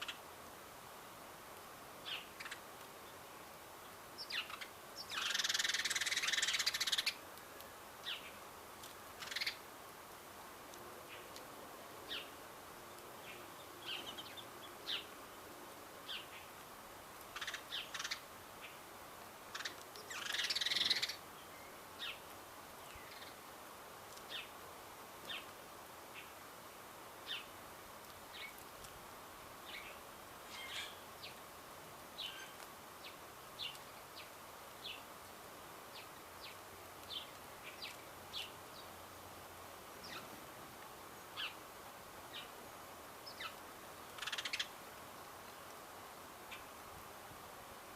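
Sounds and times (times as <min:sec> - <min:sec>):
birds chirping: 0:12.0 - 0:16.6, 0:19.5 - 0:23.4, 0:29.5 - 0:31.5, 0:32.1 - 0:35.2, 0:35.8 - 0:39.0, 0:39.9 - 0:40.4, 0:41.1 - 0:44.8.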